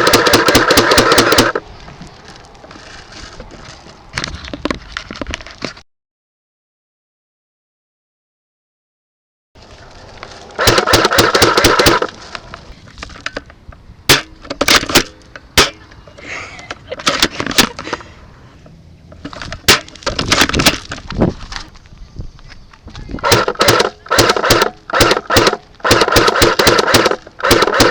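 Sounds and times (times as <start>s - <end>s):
airsoft guns firing in bursts: 0.0s - 1.6s, 10.6s - 12.1s, 23.2s - 27.9s.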